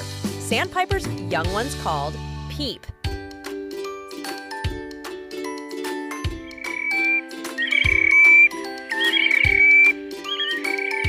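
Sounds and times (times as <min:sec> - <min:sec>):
looped children's tune: 0:03.7 - 0:11.0.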